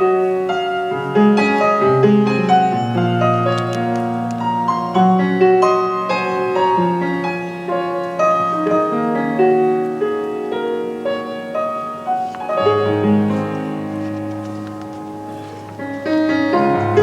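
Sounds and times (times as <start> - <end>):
slow melodic piano music: 0.0 - 17.0.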